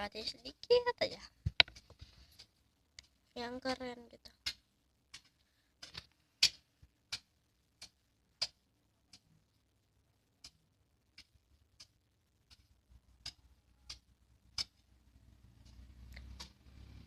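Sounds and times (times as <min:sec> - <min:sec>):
fingers tapping a phone screen: 0:01.4 - 0:03.2, 0:04.3 - 0:09.4, 0:10.4 - 0:14.8.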